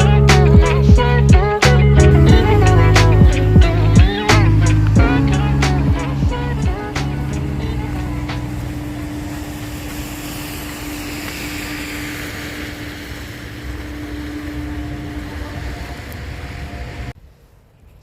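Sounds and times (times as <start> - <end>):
passing vehicle tyre hiss: 0.0 - 17.2
traffic engine hum: 0.0 - 17.2.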